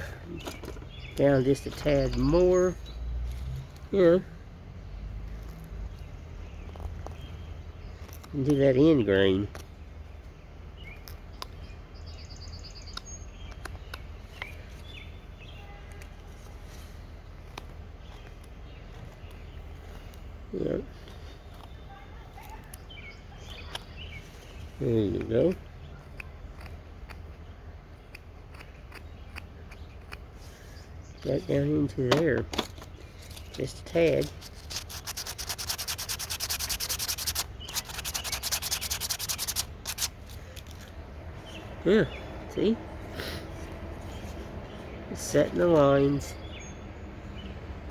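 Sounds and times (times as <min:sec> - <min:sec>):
birds chirping: 0:00.0 - 0:47.9
rapid rubbing strokes on wood: 0:33.3 - 0:40.3.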